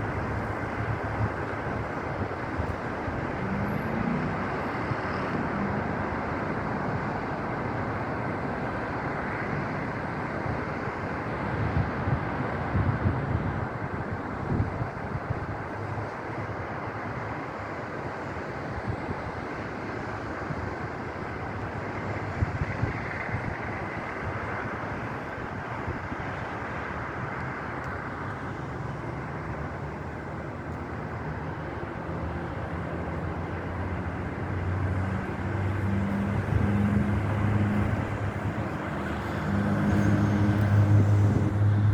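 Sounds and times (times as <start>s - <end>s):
highway traffic roar: 0.0s - 41.9s.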